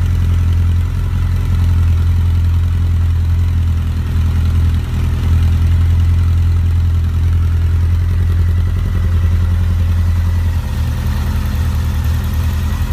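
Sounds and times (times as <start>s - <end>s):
motorcycle engine running: 0.0s - 12.9s.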